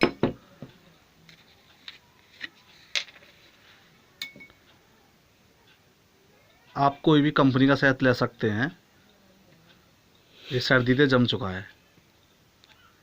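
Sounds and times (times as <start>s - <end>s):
spoon clinking against glass: 4.2s - 4.6s.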